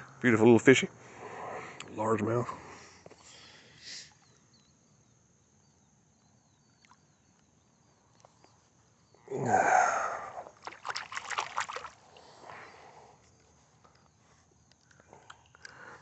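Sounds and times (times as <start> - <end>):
faint chirping: 0.0 - 10.6, 12.0 - 16.0
water splashing and sloshing: 10.4 - 13.0.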